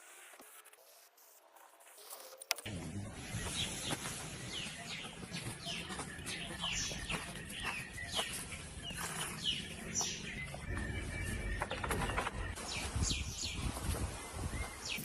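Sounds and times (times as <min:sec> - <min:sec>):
birds calling: 0:03.0 - 0:15.0.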